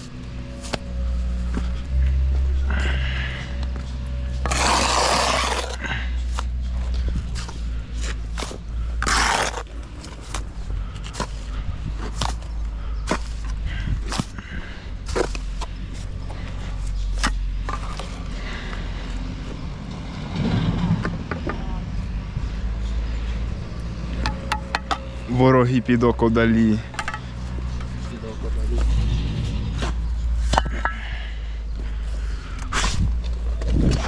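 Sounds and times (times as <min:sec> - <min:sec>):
rough scraping noise: 0:00.5 - 0:12.4.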